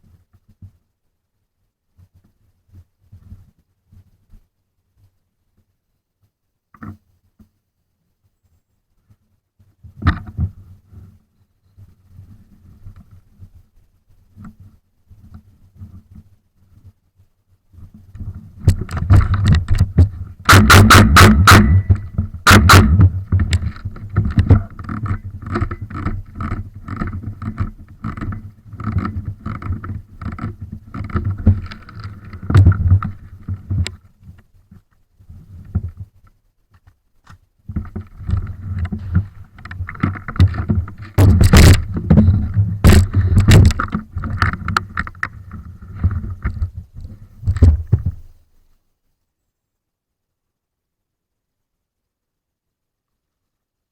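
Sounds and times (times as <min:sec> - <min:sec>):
rustles and knocks: 0:08.4 - 0:11.2, 0:11.8 - 0:48.8
microphone handling rumble: 0:17.8 - 0:34.1, 0:37.7 - 0:48.4
loud sharp knocks: 0:20.5 - 0:23.5, 0:41.2 - 0:43.8.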